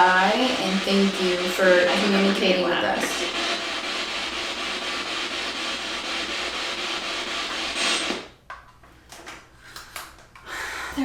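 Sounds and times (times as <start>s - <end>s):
radio static hiss: 0.0s - 8.1s.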